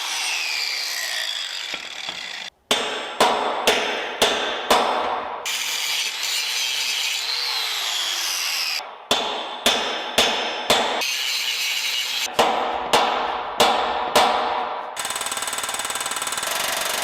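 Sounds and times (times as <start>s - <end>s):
hammer striking metal: 2.7s - 5.4s, 8.9s - 11.2s, 12.2s - 15.0s.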